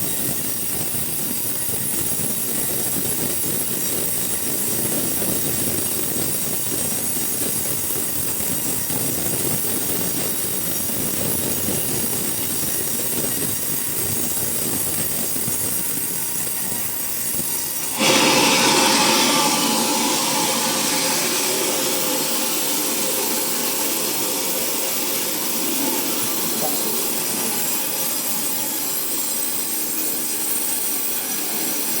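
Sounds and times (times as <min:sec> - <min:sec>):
sawmill cutting wood: 0:00.0 - 0:32.0.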